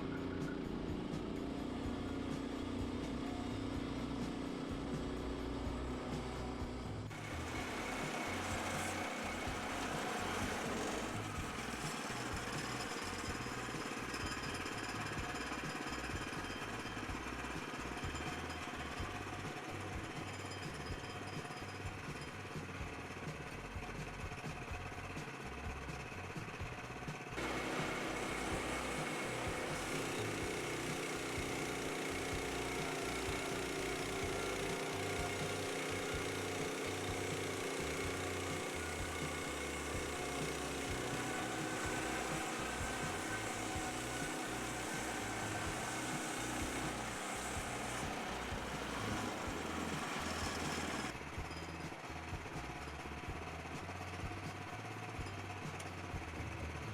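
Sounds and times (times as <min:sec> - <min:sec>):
sawmill engine rumbling: 0:00.0 - 0:20.2, 0:27.4 - 0:51.3.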